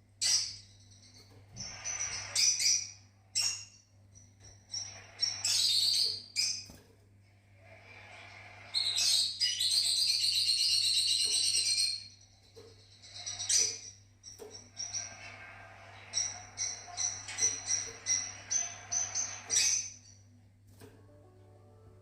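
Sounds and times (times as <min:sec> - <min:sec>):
lovebirds chirping: 0:00.2 - 0:06.8, 0:08.0 - 0:20.4
faint low hum: 0:11.3 - 0:22.0.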